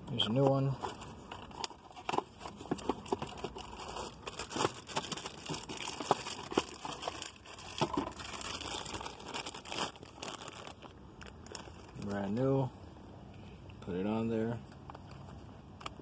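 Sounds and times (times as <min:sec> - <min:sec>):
plastic packaging crinkling: 0:01.5 - 0:12.2.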